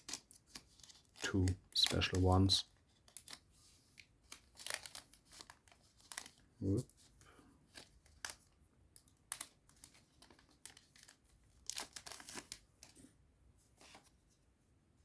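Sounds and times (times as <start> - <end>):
wrapper tearing and crinkling: 0.0 - 2.2, 4.2 - 6.5, 9.3 - 12.9.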